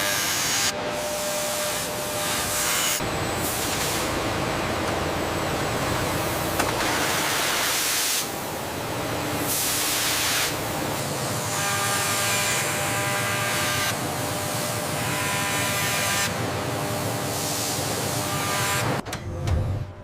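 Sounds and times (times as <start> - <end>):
steady machine drone: 0.0 - 20.0
machine hissing: 1.7 - 12.2
multi-pitched humming tone: 3.0 - 7.0.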